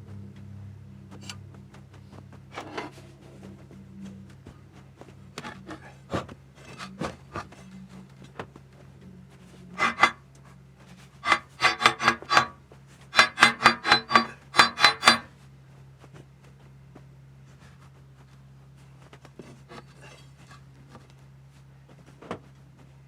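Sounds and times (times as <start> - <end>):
rapid ringing scraping strokes: 9.8 - 10.2, 11.2 - 12.6, 13.2 - 15.3.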